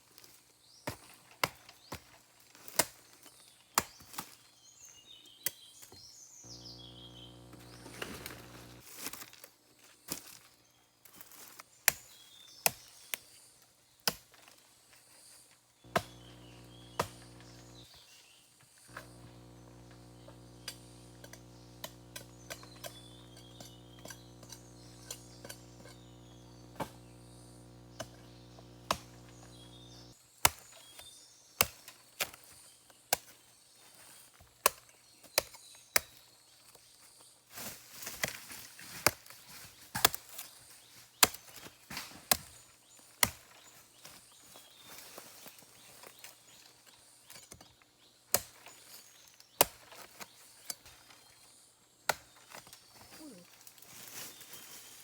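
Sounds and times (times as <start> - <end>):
steady hum: 6.5 - 8.8, 15.9 - 17.9, 18.9 - 30.2
sharp chopping knocks: 15.9 - 17.8, 28.8 - 29.3.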